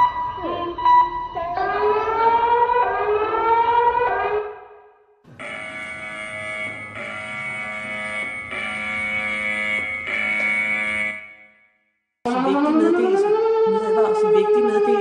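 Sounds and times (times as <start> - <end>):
wailing electronic siren: 5.3 - 11.7, 12.3 - 15.0
many-toned electronic alarm: 5.3 - 15.0.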